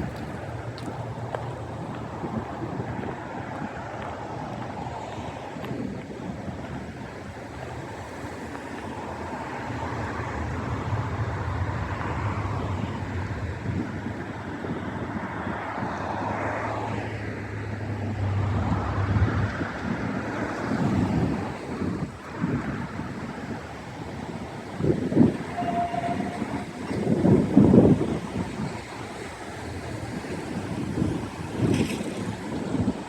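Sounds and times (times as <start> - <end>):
wind gusting over microphone: 0.0 - 33.0
low engine-like hum: 8.7 - 22.1.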